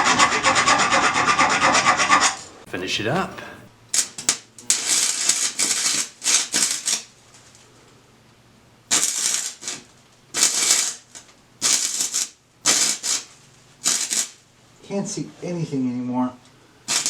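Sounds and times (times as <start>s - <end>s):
welding arc crackling: 2.7s - 7.8s, 8.8s - 14.5s.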